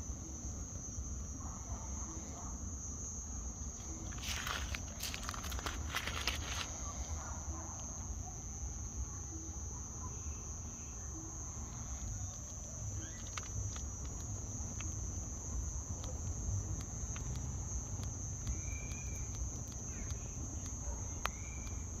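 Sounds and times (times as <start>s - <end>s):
crickets trilling: 0.0s - 22.0s
sharp clicks: 12.0s - 22.0s.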